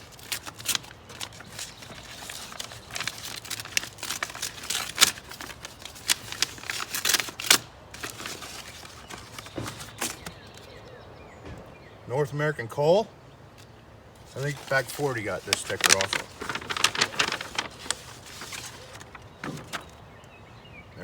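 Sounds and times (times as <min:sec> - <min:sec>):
packaging rustling and tearing: 0:00.0 - 0:10.7, 0:14.2 - 0:20.0.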